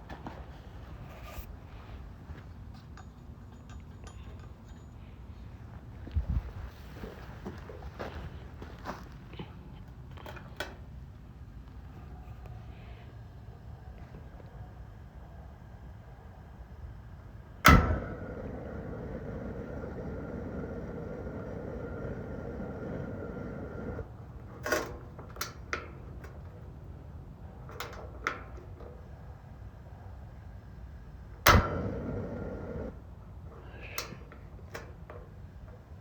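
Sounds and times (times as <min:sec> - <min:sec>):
heater humming with a whine: 0:00.0 - 0:36.0
heater igniting bang: 0:17.6 - 0:24.1, 0:31.4 - 0:33.0.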